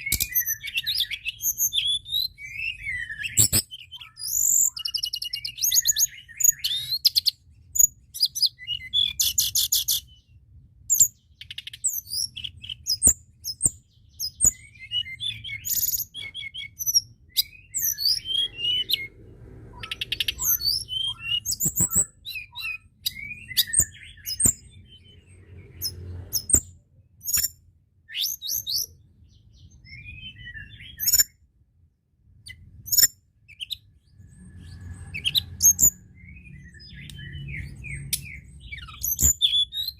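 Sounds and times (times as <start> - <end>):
bird singing chirps and trills: 0.0 - 31.5, 32.2 - 39.9.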